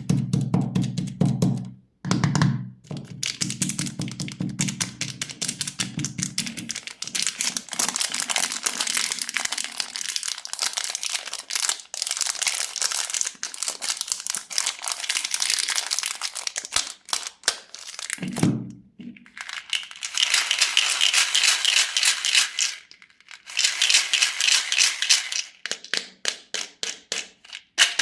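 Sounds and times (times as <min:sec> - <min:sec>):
plastic wrapper crinkling: 0:04.9 - 0:18.3, 0:19.2 - 0:25.8.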